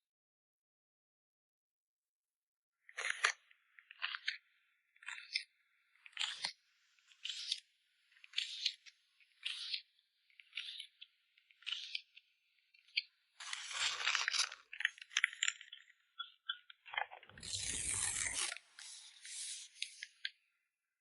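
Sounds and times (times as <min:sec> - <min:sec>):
packing materials rustling: 0:13.4 - 0:15.0.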